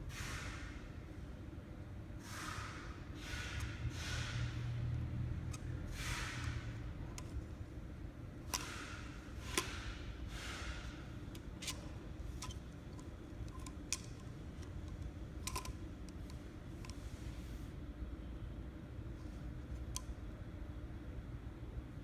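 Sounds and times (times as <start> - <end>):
steady low hum: 0.9 - 22.0
sharp plastic clicks: 8.4 - 17.0.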